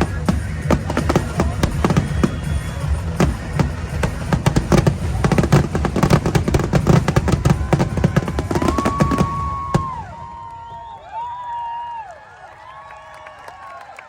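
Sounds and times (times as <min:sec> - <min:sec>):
fireworks bangs and crackles: 0:00.0 - 0:10.9
shrill falling whistles: 0:01.6 - 0:04.1, 0:07.2 - 0:12.0.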